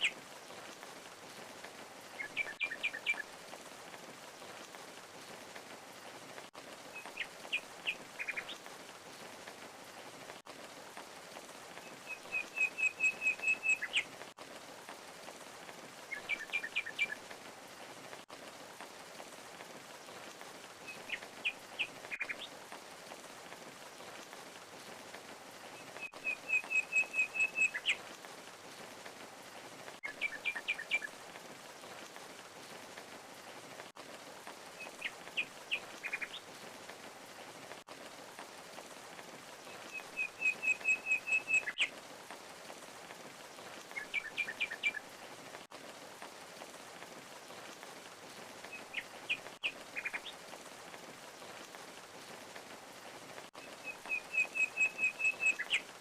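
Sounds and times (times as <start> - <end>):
rush of falling water: 0.0 - 56.0
songbird chirping and trilling: 11.9 - 14.0, 26.0 - 28.0, 39.8 - 41.9, 53.7 - 55.8.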